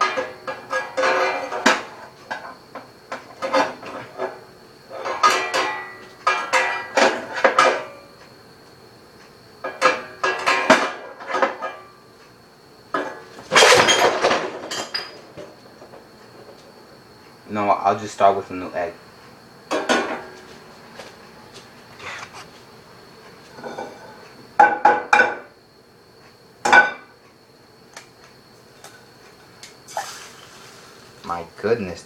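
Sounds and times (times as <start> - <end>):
utensil scraping a frying pan: 29.9 - 31.2.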